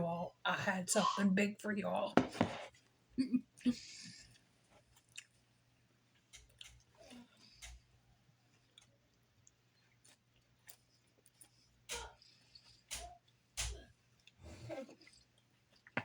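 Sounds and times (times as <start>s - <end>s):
chewing salad: 3.6s - 16.0s.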